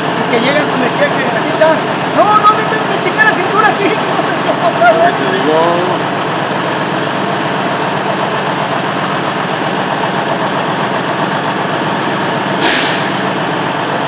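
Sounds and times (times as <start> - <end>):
diesel engine idling: 0.0 - 14.0
short sharp air hiss: 12.6 - 13.8.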